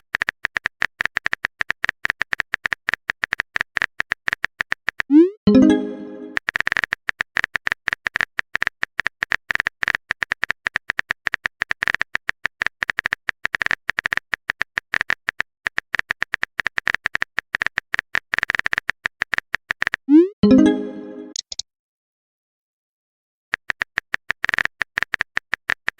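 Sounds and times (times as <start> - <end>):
notification chime: 5.5 - 6.4, 20.4 - 21.4
phone keyboard typing clicks: 21.1 - 21.6.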